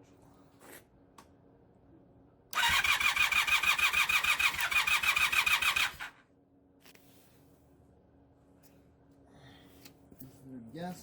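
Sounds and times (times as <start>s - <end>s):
electric starter cranking engine: 2.6s - 6.2s.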